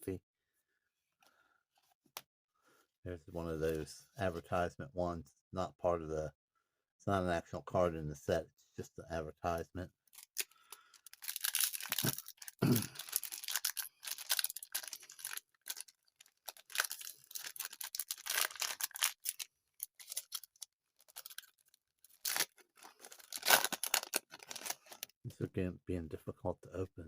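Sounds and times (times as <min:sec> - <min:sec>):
plastic wrapper crinkling: 0:10.1 - 0:25.1.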